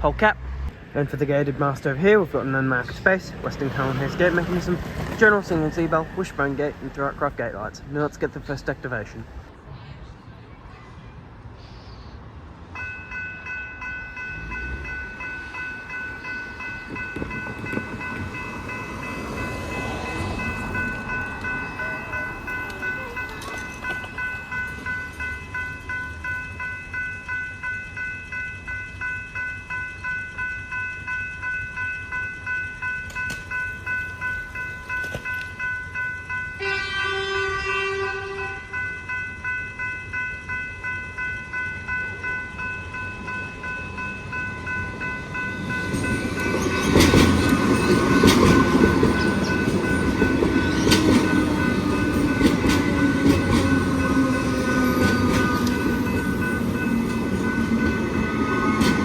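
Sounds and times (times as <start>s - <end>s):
train wheel clatter: 1.1s - 8.6s, 16.0s - 25.7s, 45.2s - 59.0s
level crossing bell ringing: 12.8s - 59.0s
train horn: 36.6s - 38.8s.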